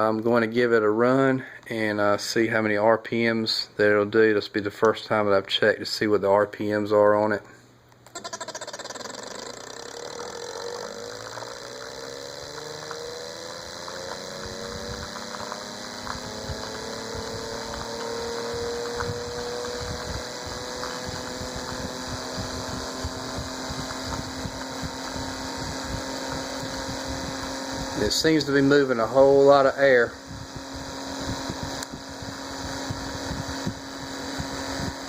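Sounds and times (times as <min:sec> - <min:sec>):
pulse motor whine: 0:08.0 - 0:35.0
rushing air from rotor: 0:08.8 - 0:35.0.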